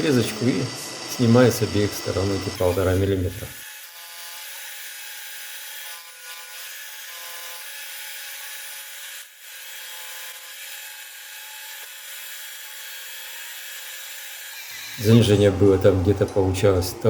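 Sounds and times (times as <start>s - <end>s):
machine whine: 0.0s - 3.5s
milling cutter cutting metal: 0.0s - 17.0s.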